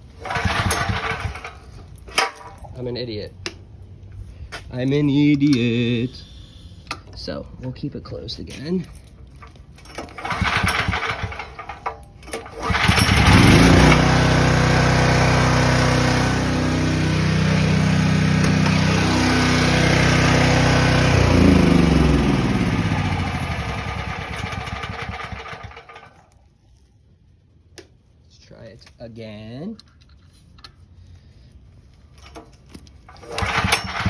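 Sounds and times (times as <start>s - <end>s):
generator recoil start: 0.0s - 2.8s, 9.4s - 26.3s, 32.2s - 34.0s
generator engine running: 0.1s - 1.8s, 10.0s - 26.2s, 33.1s - 34.0s.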